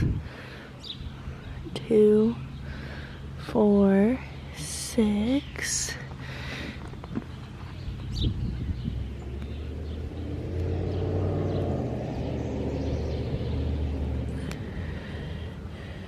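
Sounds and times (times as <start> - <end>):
vehicle driving past: 7.8 - 16.0.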